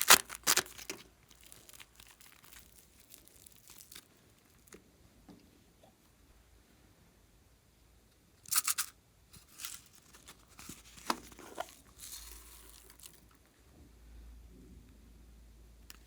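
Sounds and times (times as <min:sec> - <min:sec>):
slime materials crinkling and tearing: 0:00.0 - 0:04.8, 0:09.4 - 0:13.3.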